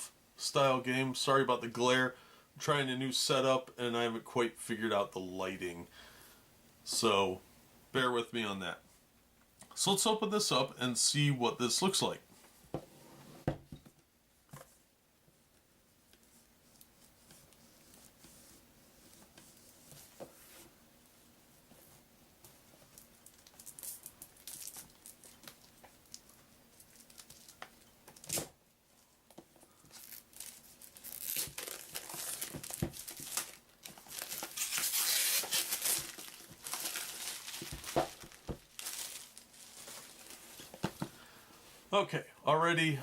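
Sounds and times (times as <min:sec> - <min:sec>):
plastic shrink wrap crinkling: 0:22.8 - 0:28.4, 0:29.7 - 0:41.0.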